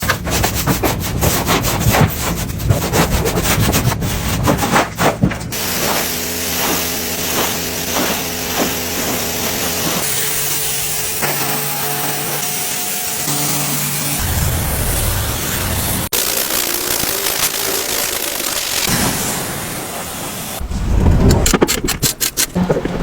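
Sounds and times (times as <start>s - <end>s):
scrubbing strokes: 1.0s - 10.0s.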